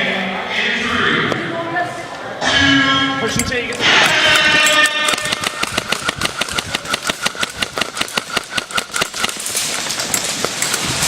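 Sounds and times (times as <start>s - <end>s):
airsoft gun firing full-auto: 5.0s - 10.8s.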